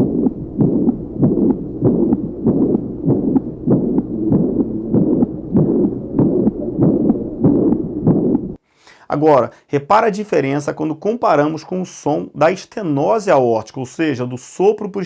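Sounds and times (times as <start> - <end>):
blowing heart murmur: 0.0 - 8.6
regular heartbeat: 0.0 - 8.6.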